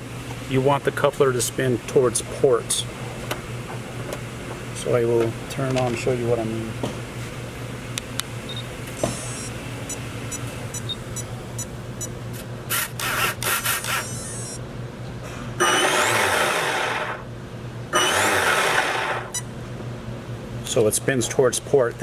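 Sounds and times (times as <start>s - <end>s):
electronic beeps: 8.5s - 12.1s, 14.0s - 14.6s
electric motor whining: 12.8s - 14.6s, 15.6s - 17.3s, 18.0s - 19.3s.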